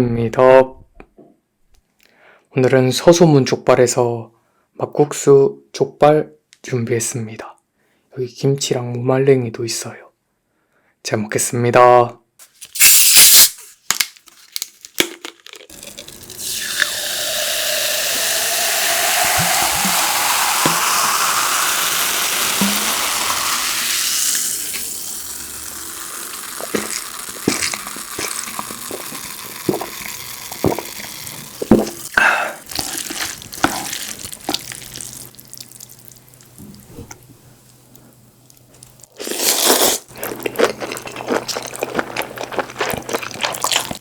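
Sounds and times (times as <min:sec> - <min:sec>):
liquid pouring into vessel: 0:15.7 - 0:36.2.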